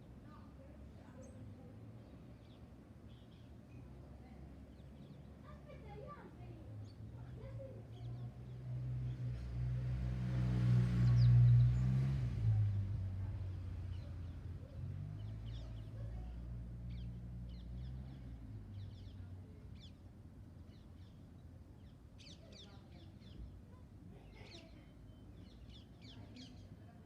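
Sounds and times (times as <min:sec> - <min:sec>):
vehicle engine passing: 0:07.4 - 0:19.9
small bird chirps: 0:13.9 - 0:20.0, 0:24.2 - 0:26.8.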